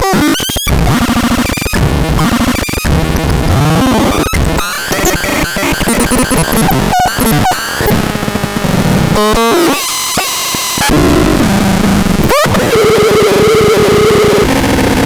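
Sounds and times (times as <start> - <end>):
harsh glitchy electronic noise: 0.0 - 15.0.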